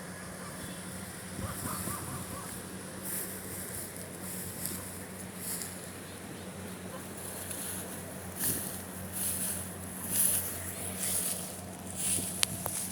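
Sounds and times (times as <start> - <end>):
combine harvester engine humming: 0.0 - 12.9.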